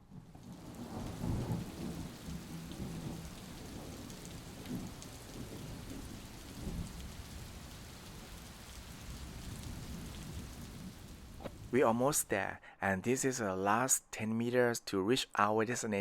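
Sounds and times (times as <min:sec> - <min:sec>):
rain falling: 0:00.0 - 0:12.2.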